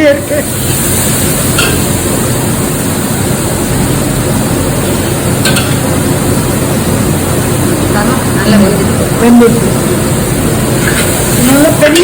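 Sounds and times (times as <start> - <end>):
gas stove burner rushing: 0.0 - 12.0.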